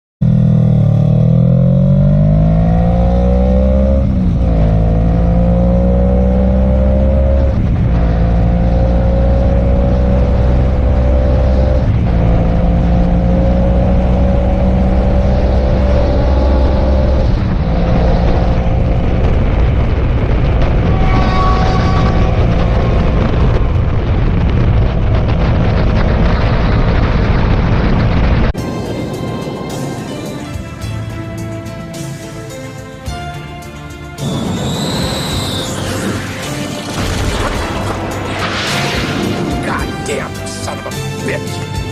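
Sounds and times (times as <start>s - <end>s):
motorcycle engine accelerating: 0.2s - 32.7s.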